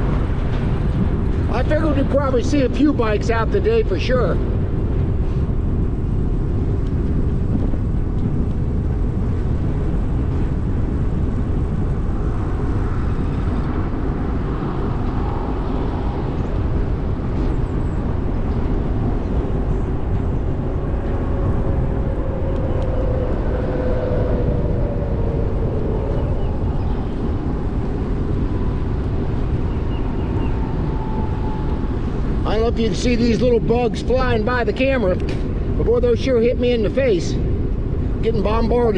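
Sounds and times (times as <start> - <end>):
wind buffeting microphone: 0.0 - 38.9
faint wavering whine: 3.9 - 34.2
e-bike rolling on trail: 4.4 - 34.2.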